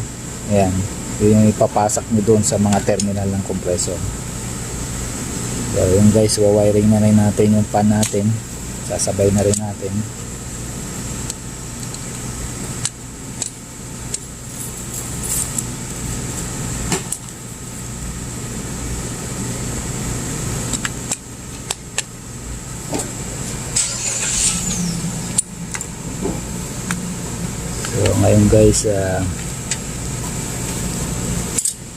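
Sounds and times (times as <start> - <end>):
motor humming: 21.6 - 31.8
tools clicking on wiring: 31.6 - 31.8.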